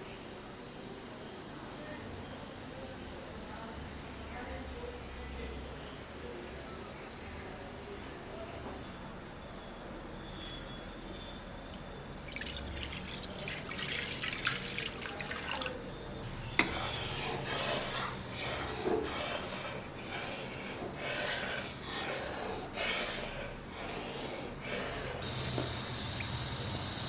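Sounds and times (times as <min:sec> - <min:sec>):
utensil scraping a cooking pan: 0:16.5 - 0:25.3.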